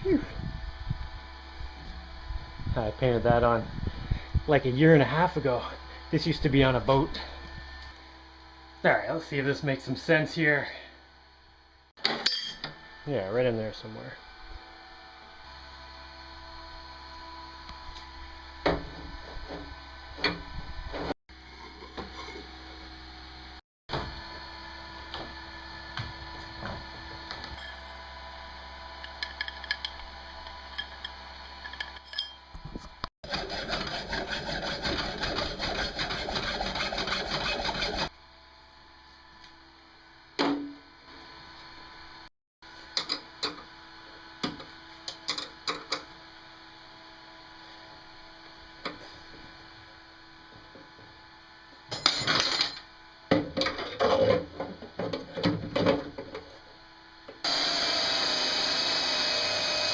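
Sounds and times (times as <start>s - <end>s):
parts knocking and clinking: 29.0s - 32.5s, 51.9s - 54.4s
rapid rasping sawing: 33.2s - 38.1s.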